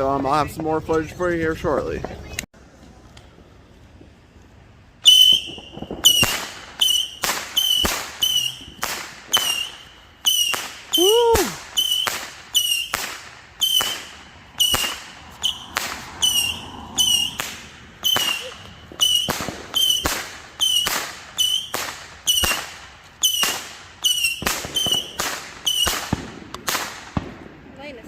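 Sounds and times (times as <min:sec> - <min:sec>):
firework whistle: 0:05.0 - 0:26.9
firework bangs: 0:05.0 - 0:28.0.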